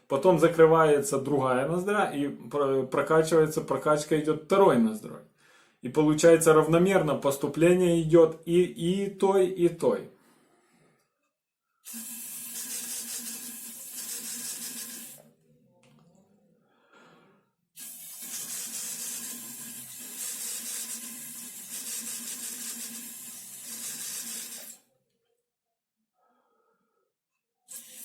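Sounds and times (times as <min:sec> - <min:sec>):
mist inhaler spraying hiss: 0:11.8 - 0:15.2, 0:17.8 - 0:24.8, 0:27.7 - 0:28.0.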